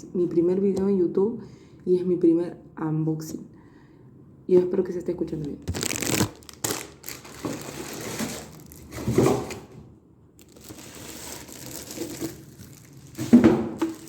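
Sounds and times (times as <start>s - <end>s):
plastic packaging crinkling: 5.3s - 9.7s, 10.4s - 14.0s.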